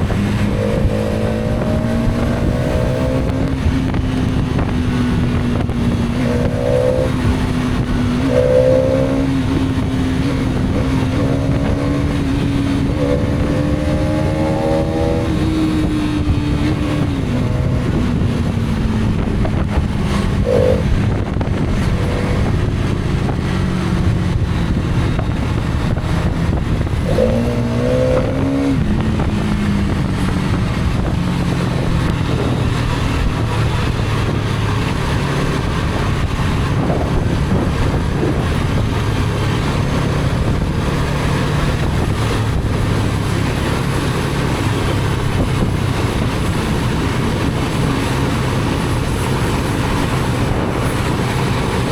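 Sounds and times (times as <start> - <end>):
wavering rising pitched sound: 0.0 - 19.4
motorcycle engine running: 0.0 - 51.9
steady rush of noise: 0.0 - 51.9.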